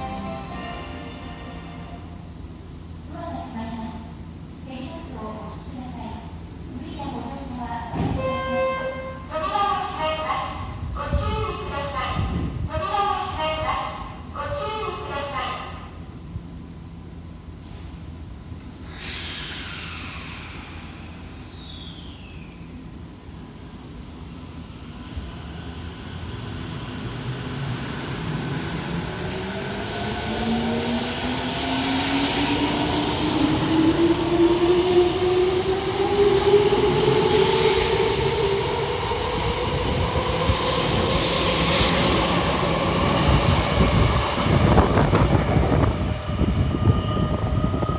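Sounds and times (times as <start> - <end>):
electric train motors whining: 18.8 - 22.9.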